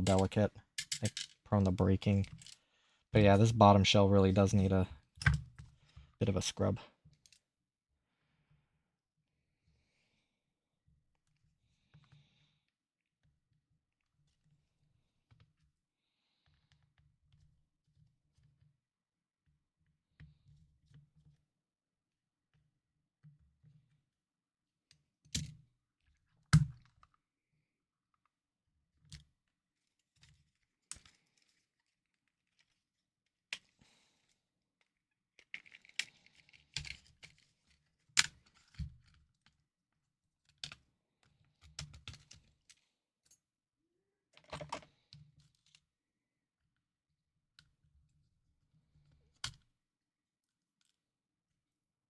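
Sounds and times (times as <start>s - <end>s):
plastic parts clicking on desk: 0.0s - 1.4s.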